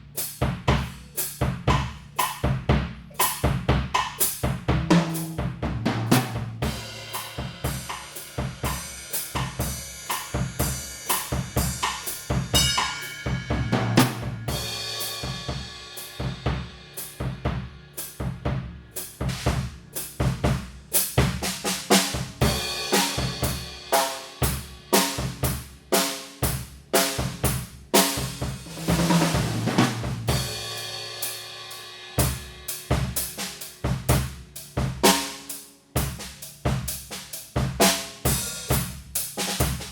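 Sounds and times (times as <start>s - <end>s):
drum kit groove: 0.0s - 39.9s
cymbal crashes: 6.6s - 17.4s.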